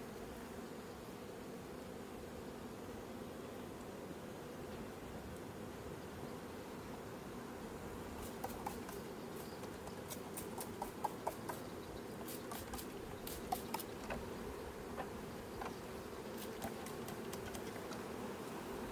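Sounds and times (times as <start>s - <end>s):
bees buzzing: 5.7s - 18.9s
sharp clicks and ticks: 9.6s - 11.6s.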